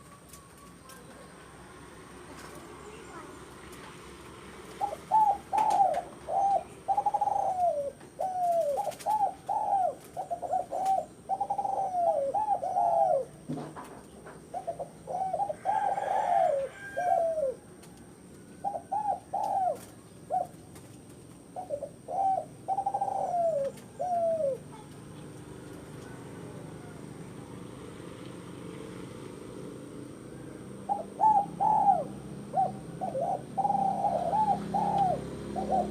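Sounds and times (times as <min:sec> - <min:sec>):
dove cooing: 0:04.6 - 0:27.7, 0:30.0 - 0:35.9.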